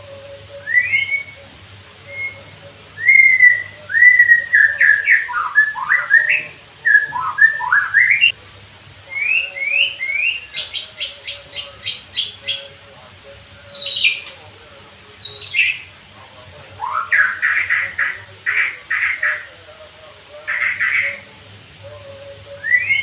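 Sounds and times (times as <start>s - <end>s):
bird singing whistled phrases: 0.2s - 8.4s, 9.1s - 12.8s, 13.7s - 14.4s, 15.2s - 15.9s, 16.8s - 19.5s, 20.5s - 21.3s, 22.2s - 23.0s.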